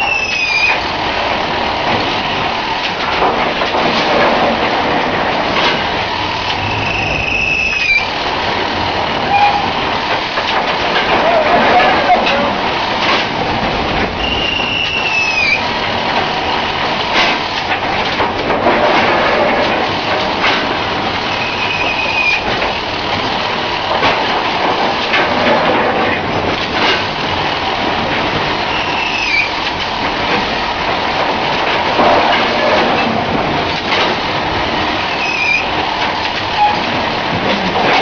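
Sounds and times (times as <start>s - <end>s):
machine clattering rattle: 0.0s - 38.0s
short falling squeal: 6.6s - 8.1s, 14.2s - 15.6s.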